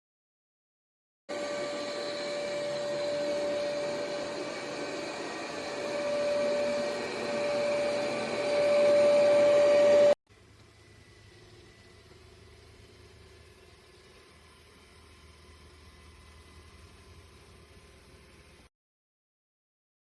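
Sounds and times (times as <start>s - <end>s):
robot vacuum motor whine: 1.3s - 10.2s.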